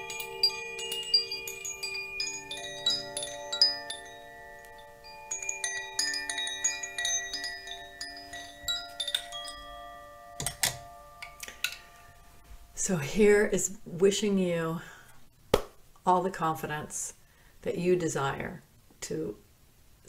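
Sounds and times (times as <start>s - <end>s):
chimes ringing: 0.0s - 12.8s.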